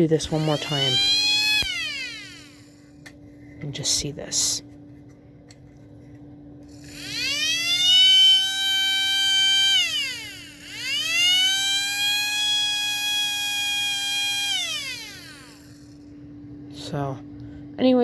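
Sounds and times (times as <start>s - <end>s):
motor-driven siren wailing: 0.2s - 2.8s, 6.8s - 16.0s.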